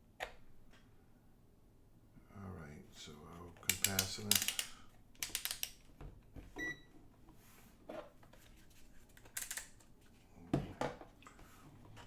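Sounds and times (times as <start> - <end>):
sharp clicks: 3.6 - 5.8
multimeter beep: 6.6 - 6.9.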